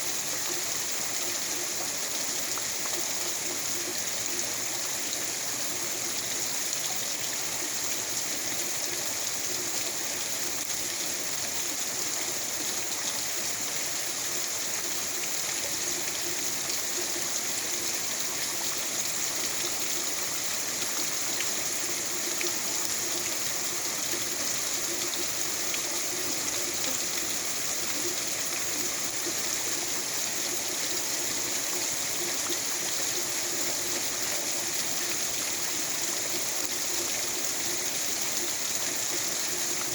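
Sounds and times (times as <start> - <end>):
steady rain hissing: 0.0 - 39.9
water running and trickling: 0.0 - 39.9.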